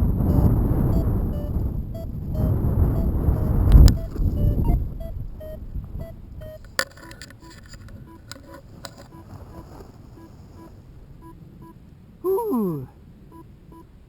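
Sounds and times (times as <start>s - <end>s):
short electronic beeps: 0.2s - 11.8s
sharp clicks: 1.4s - 5.6s, 6.4s - 9.2s.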